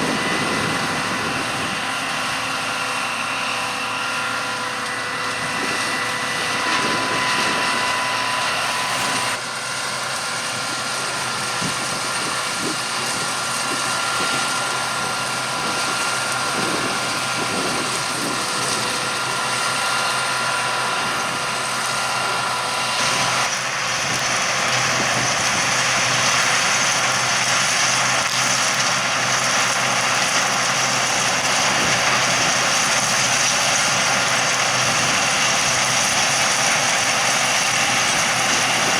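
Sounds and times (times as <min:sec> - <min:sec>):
high steady whining tones: 0:00.0 - 0:27.0
harvest machinery engine drone: 0:00.0 - 0:38.9.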